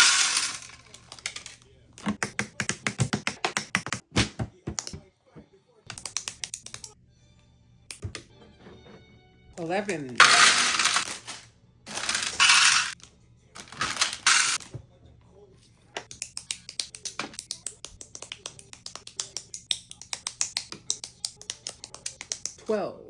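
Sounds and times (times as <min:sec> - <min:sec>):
plastic pieces clattering: 0:00.0 - 0:02.1, 0:09.9 - 0:13.0, 0:13.6 - 0:14.7
plastic bag crinkling and tearing: 0:11.0 - 0:12.4.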